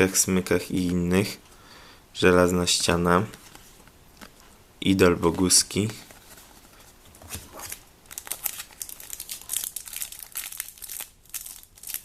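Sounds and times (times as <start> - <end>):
foil card packet crinkling: 5.9 - 12.0.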